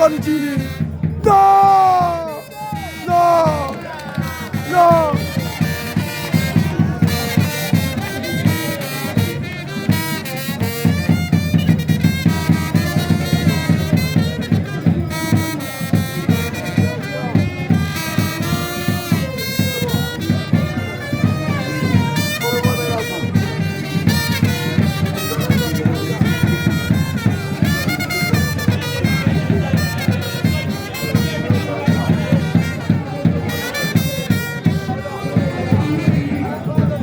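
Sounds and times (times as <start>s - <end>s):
busy drumming: 0.0s - 37.0s
horns playing melody: 1.2s - 6.7s.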